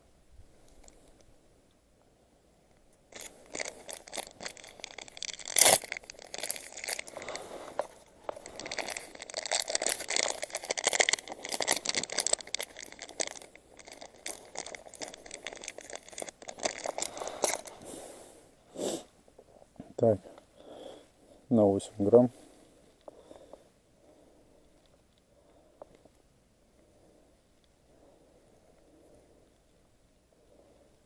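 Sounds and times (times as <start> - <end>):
plastic packets crinkling: 3.1 - 18.0.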